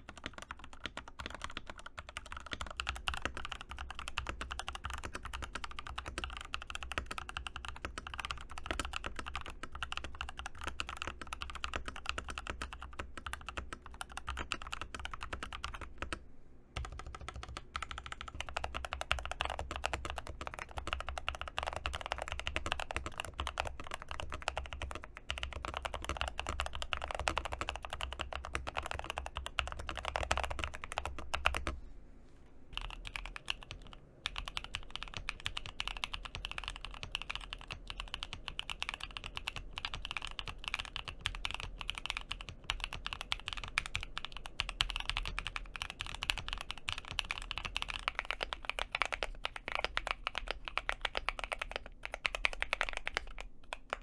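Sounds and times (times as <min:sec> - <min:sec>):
typing on mechanical keyboard: 0:00.0 - 0:16.2, 0:16.8 - 0:31.8, 0:32.8 - 0:54.0.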